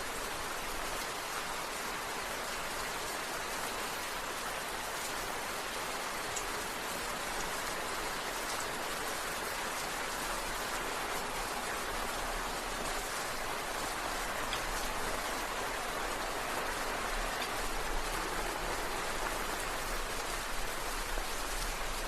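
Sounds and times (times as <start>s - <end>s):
steady rain hiss: 0.0s - 22.0s
raindrop ticks: 14.4s - 14.9s.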